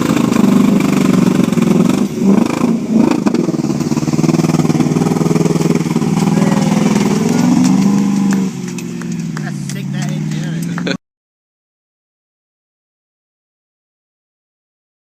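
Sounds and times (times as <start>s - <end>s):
engine running under load: 0.0s - 11.0s.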